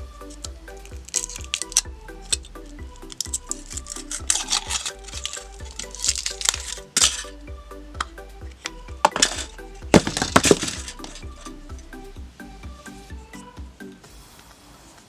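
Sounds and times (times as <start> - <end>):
electronic dance music: 0.0 - 14.9
plastic eggs cracking open: 0.4 - 2.5, 3.1 - 7.4, 8.6 - 11.5.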